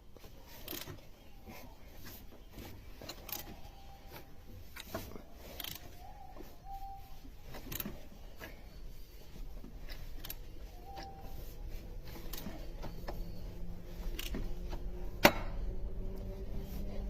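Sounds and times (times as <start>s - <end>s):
car engine running: 0.3s - 17.0s.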